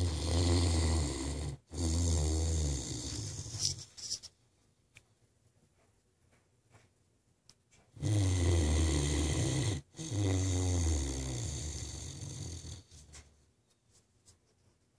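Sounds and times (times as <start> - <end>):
dog snoring: 0.0 - 3.8, 8.0 - 13.2.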